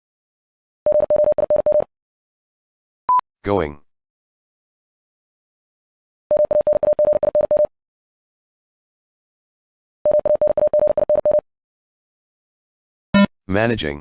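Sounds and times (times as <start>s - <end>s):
morse code beeps: 0.9s - 1.9s, 6.3s - 7.7s, 10.1s - 11.4s.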